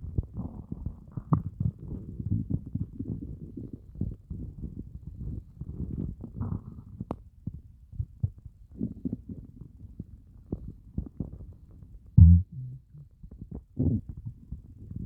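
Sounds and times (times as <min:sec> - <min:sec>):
stomach gurgling: 0:00.0 - 0:15.0
low stomach growl: 0:00.1 - 0:07.1, 0:12.2 - 0:15.0.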